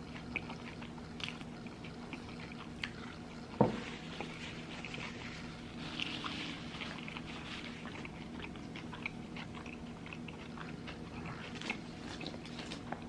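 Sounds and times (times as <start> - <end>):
person chewing food: 0.0 - 13.0.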